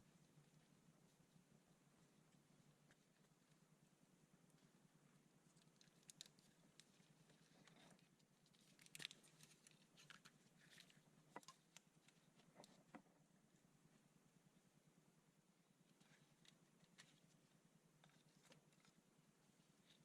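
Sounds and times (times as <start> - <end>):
small clicks and ticks: 5.4 - 13.0.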